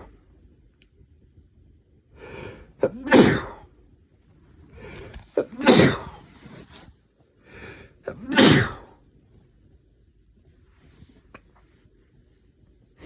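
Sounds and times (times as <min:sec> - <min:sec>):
man sneezing: 0:02.8 - 0:03.6, 0:04.8 - 0:06.8, 0:08.1 - 0:08.9.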